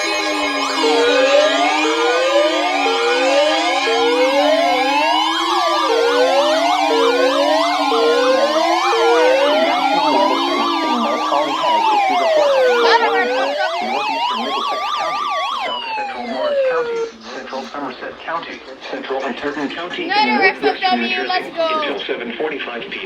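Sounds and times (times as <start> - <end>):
low wavering siren tone: 0.0 - 17.2
wailing siren: 0.0 - 17.7
yelping siren: 0.0 - 17.7.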